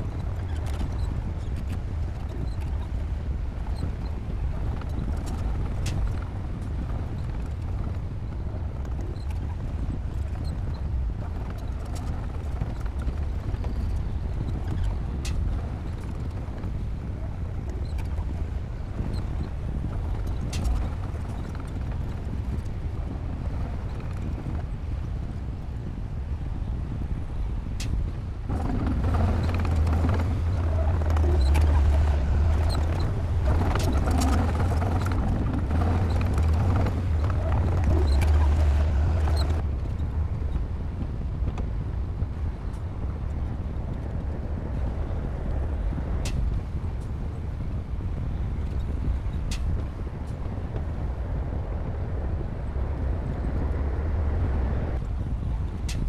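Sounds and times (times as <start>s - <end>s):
bulldozer diesel engine droning: 28.5s - 39.6s.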